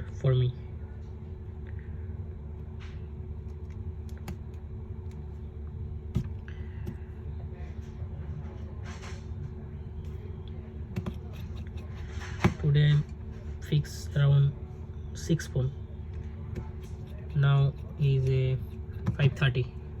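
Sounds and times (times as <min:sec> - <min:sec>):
low hum: 0:00.0 - 0:20.0.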